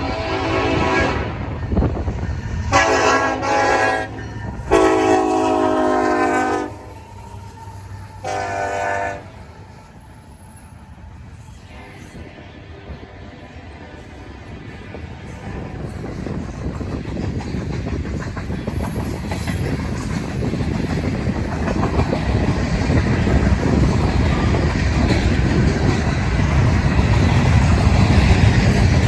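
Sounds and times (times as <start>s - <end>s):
locomotive air horn blasts: 0.0s - 1.5s, 2.6s - 7.0s, 8.2s - 9.6s
train rumble: 0.0s - 29.0s.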